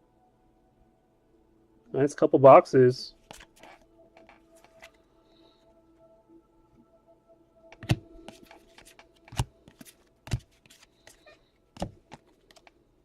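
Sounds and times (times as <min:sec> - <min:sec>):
packaging rustling: 0:03.2 - 0:05.0
cards tapping on table: 0:07.8 - 0:10.8, 0:11.8 - 0:12.7.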